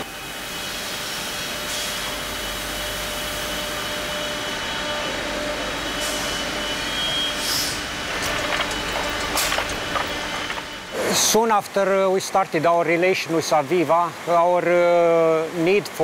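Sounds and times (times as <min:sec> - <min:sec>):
industrial machinery hum: 0:00.0 - 0:11.8.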